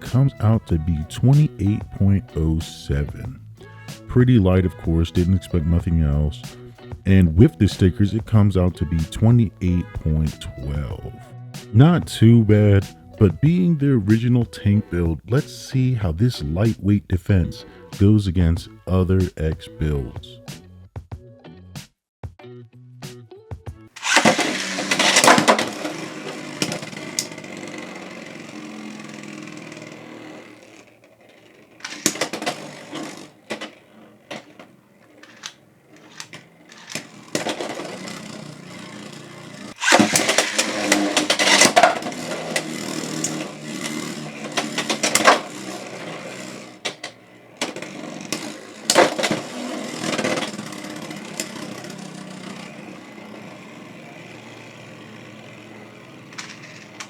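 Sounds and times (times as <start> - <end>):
spinning tops launched: 24.0 - 57.0
spinning tops rattling and clashing: 24.0 - 57.0.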